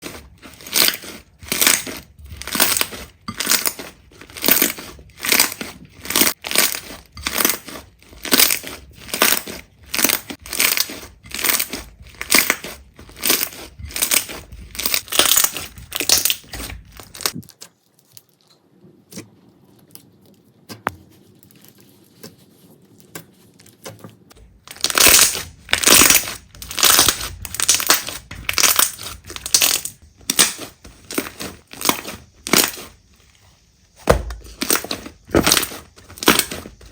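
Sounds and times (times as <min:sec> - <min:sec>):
slime squishing: 0:00.0 - 0:33.3, 0:34.0 - 0:36.9
faint handling sounds: 0:17.4 - 0:24.4.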